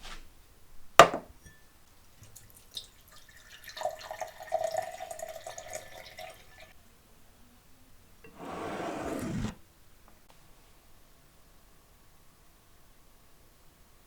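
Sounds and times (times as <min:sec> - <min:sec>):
water trickling in a thin stream: 0:02.1 - 0:06.8.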